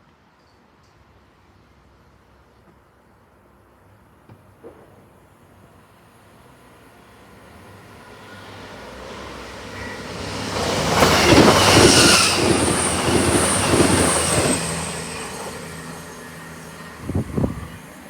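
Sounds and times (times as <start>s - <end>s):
train passing at speed: 4.6s - 18.0s.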